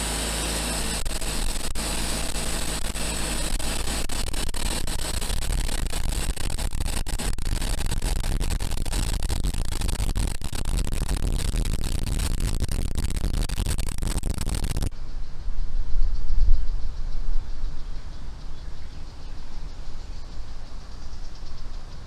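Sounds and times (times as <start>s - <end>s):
gasoline engine running: 0.0s - 5.1s.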